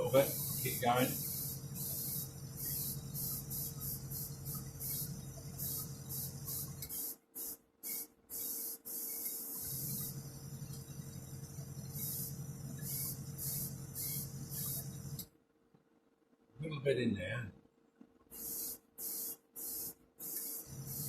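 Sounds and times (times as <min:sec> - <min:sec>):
steady low hum: 0:00.0 - 0:06.9, 0:09.6 - 0:15.2, 0:20.6 - 0:21.0
airbrush spraying hiss: 0:00.0 - 0:15.2, 0:18.3 - 0:21.0.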